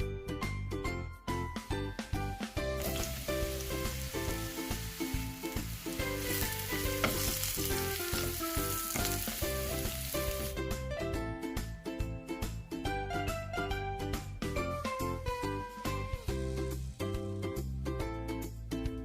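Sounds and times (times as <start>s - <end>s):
food sizzling in hot oil: 2.6s - 10.6s.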